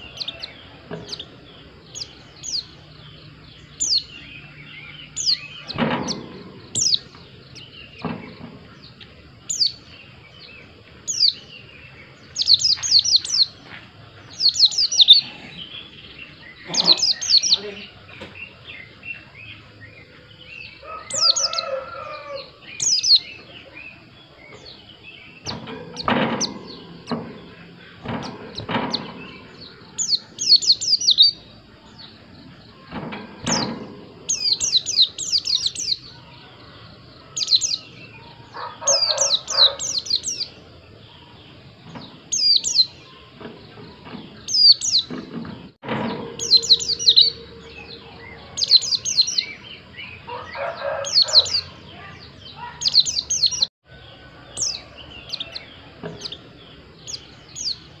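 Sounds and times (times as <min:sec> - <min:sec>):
bird chirping: 0:00.0 - 0:58.0
lower bird calls: 0:00.0 - 0:58.0
dull knocks: 0:25.4 - 0:29.7, 0:32.8 - 0:34.4.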